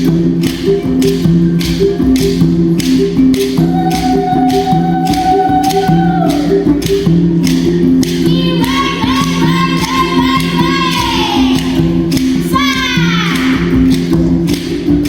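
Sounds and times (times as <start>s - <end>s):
low plucked mbira notes: 0.0s - 15.0s
rattling percussion: 0.0s - 15.0s
child singing: 8.3s - 11.9s, 12.5s - 13.8s.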